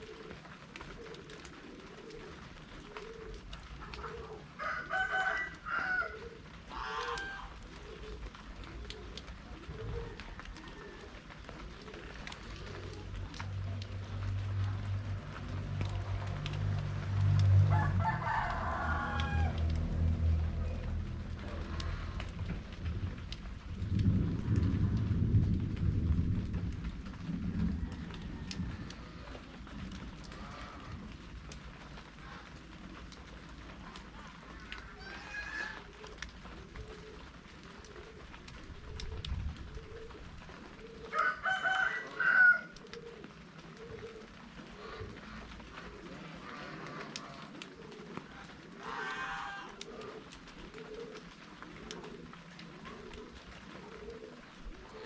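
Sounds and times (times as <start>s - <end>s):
light drizzle: 0.0s - 55.0s
pigeons cooing: 0.0s - 55.0s
drip ticks: 12.2s - 17.7s, 26.7s - 34.8s, 44.6s - 48.6s
rolling thunder: 13.6s - 31.1s
poultry calls: 43.9s - 51.1s.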